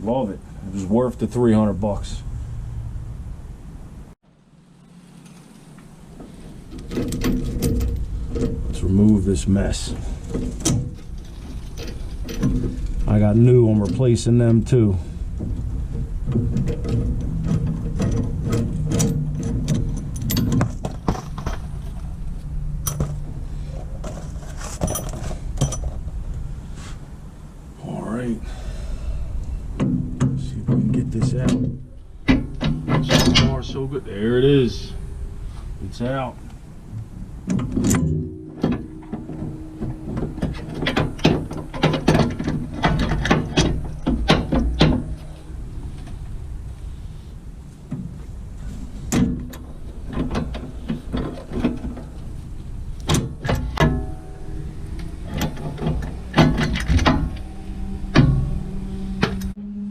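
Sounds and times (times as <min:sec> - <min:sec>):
metallic clinks and knocks of tools: 0:16.6 - 0:22.1, 0:22.8 - 0:23.2, 0:23.8 - 0:26.1, 0:37.8 - 0:45.3
clicks and clanks of tools: 0:22.8 - 0:23.2, 0:37.5 - 0:45.3, 0:54.9 - 0:57.5.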